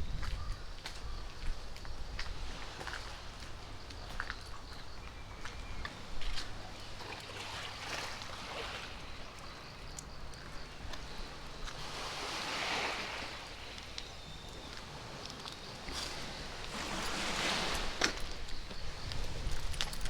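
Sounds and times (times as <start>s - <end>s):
small waves washing against shore: 5.8s - 20.0s.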